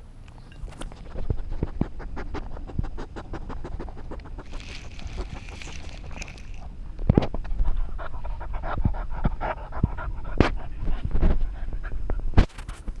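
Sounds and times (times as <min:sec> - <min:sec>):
dog panting: 0:00.9 - 0:06.7, 0:07.6 - 0:12.1.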